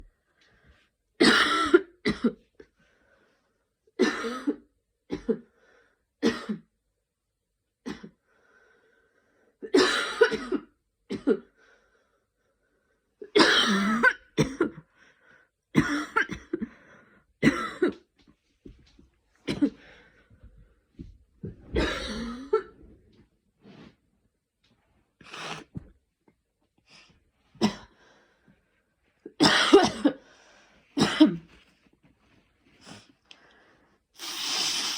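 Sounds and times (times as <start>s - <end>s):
woman coughing: 1.2s - 2.4s, 4.0s - 5.4s, 6.2s - 6.7s, 9.7s - 11.5s, 13.3s - 14.8s, 15.8s - 16.7s, 17.4s - 18.0s, 19.5s - 19.8s, 21.7s - 22.7s, 29.3s - 30.2s, 31.0s - 31.5s.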